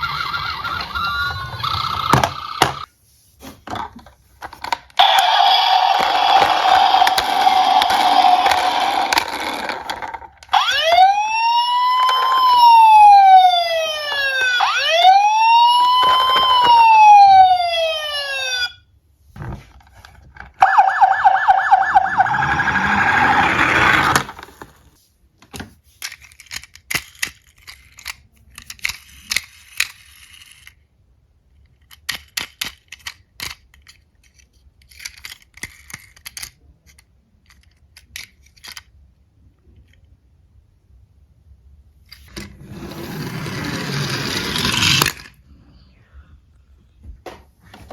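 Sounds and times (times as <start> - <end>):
toy cars clicking and rattling: 4.4 - 11.2, 26.0 - 30.9, 31.5 - 40.1, 42.0 - 45.4
emergency siren wailing: 10.5 - 18.8, 20.6 - 24.0.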